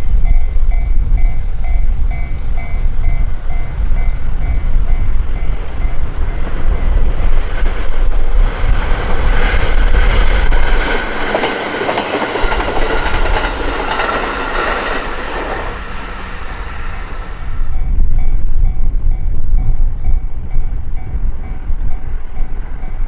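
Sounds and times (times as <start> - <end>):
train wheels clattering: 0.0 - 18.4
train heavy rumble: 0.0 - 23.0.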